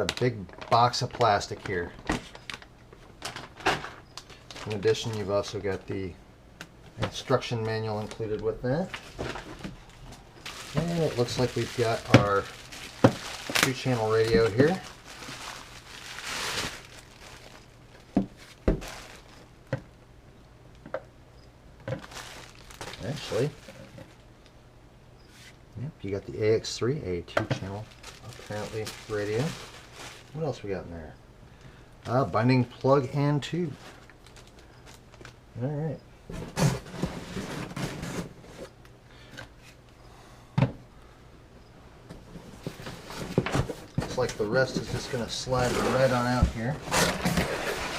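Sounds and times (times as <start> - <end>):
plastic packaging rustling: 0.0 - 6.0, 7.0 - 19.8, 21.9 - 24.3, 27.5 - 30.7, 32.1 - 35.4, 42.3 - 47.9.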